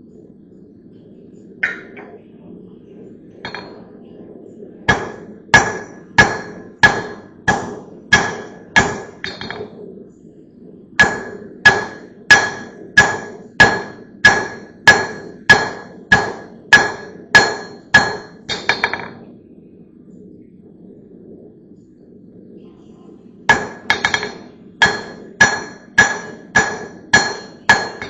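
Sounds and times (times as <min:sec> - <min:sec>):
hammer striking anvil: 0:01.6 - 0:02.1, 0:03.5 - 0:03.8, 0:04.9 - 0:09.7, 0:11.0 - 0:19.2, 0:23.5 - 0:28.0.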